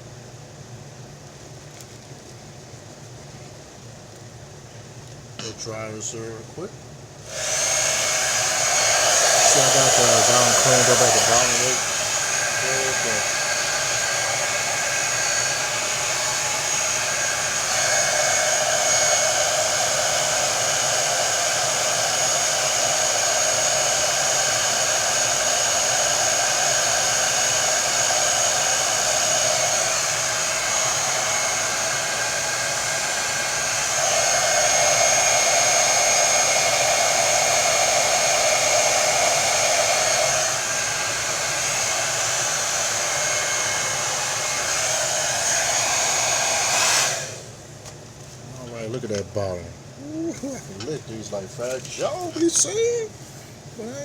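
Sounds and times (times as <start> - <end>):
hair dryer blowing with high whistle: 7.2 - 47.6, 51.1 - 53.1.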